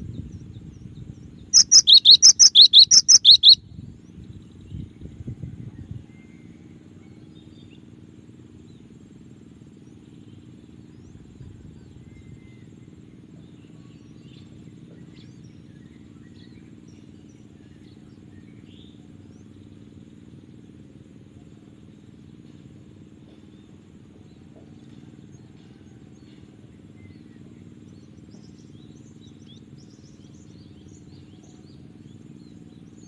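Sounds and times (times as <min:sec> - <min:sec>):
low background hum: 0:00.0 - 0:33.0
bird chirps and calls: 0:01.6 - 0:03.6.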